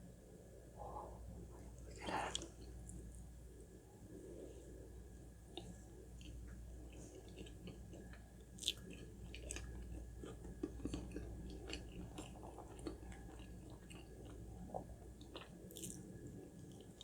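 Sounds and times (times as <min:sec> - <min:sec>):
person chewing food: 0:05.6 - 0:17.0.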